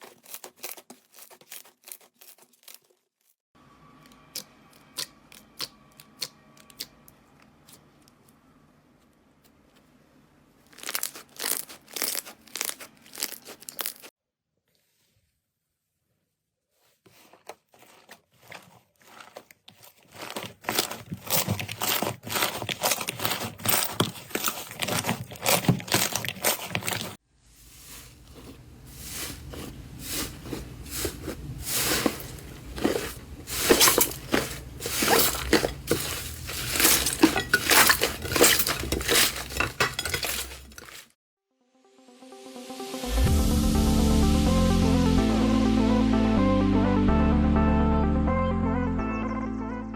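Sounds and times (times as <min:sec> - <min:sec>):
slime crackling and popping: 0:10.6 - 0:14.1.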